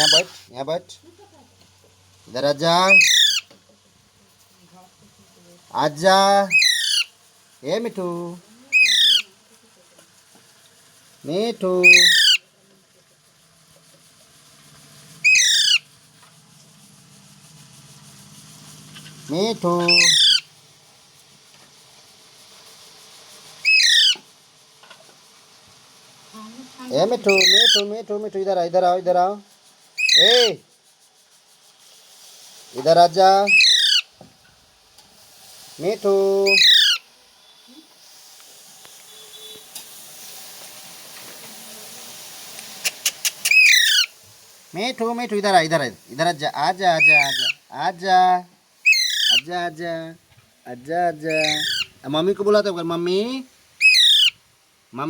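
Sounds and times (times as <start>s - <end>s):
parrot screech: 0.0s - 0.3s, 2.9s - 3.5s, 6.5s - 7.1s, 8.7s - 9.3s, 11.8s - 12.4s, 15.2s - 16.0s, 19.9s - 20.5s, 23.6s - 24.3s, 27.2s - 27.9s, 30.0s - 30.5s, 33.4s - 34.1s, 36.4s - 37.1s, 42.8s - 44.2s, 47.0s - 47.6s, 48.8s - 49.5s, 51.3s - 52.0s, 53.8s - 54.4s
faint background hiss: 0.0s - 55.0s.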